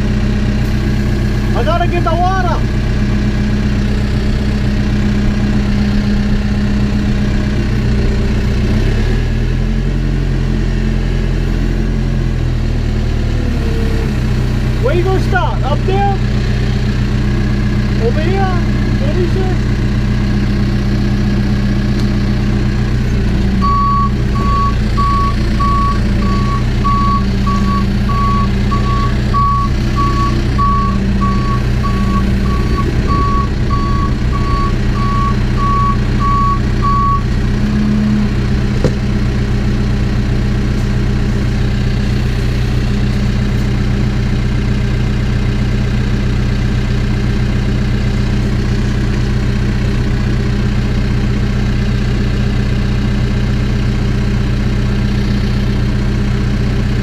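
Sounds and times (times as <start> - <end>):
backhoe engine running: 0.0 - 57.0
reversing alarm beeping: 23.6 - 38.2.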